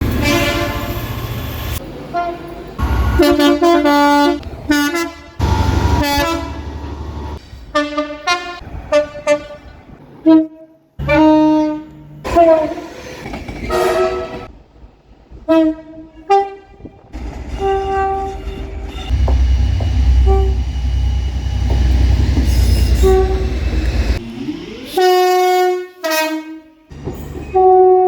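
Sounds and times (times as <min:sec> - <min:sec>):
train horn blasts: 0:00.0 - 0:07.0, 0:13.7 - 0:14.5, 0:17.6 - 0:24.2, 0:24.9 - 0:28.0
heavy low rumble: 0:19.1 - 0:24.9.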